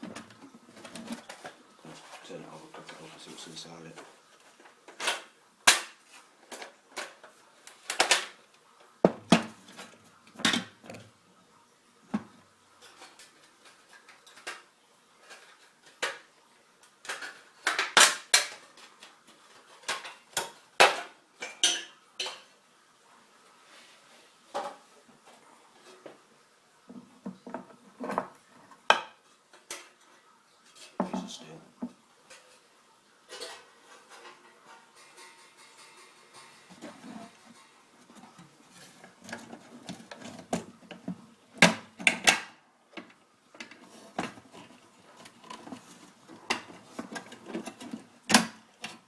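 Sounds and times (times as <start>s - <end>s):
plastic and steel parts clattering: 36.7s - 49.0s.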